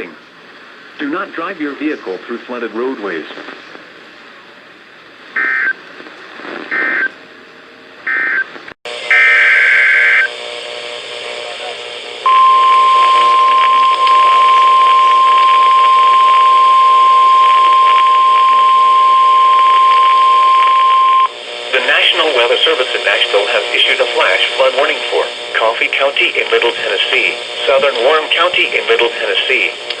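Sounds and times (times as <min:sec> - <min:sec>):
steady alarm tone: 0:08.1 - 0:11.0, 0:12.2 - 0:25.7
buzzy data bursts: 0:08.1 - 0:30.0.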